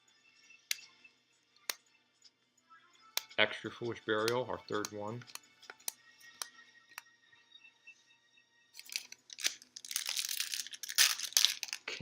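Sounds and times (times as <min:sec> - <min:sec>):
foil wrapper crinkling: 0:08.8 - 0:12.0.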